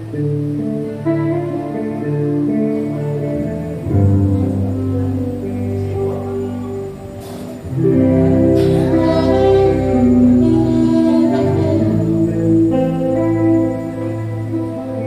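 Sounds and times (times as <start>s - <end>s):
live band with guitar: 0.0s - 15.0s.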